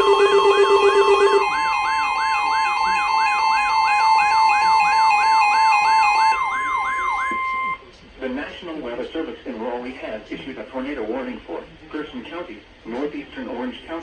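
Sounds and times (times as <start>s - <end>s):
electronic alert tones: 0.0s - 7.8s
falling siren-like tone: 0.0s - 7.9s.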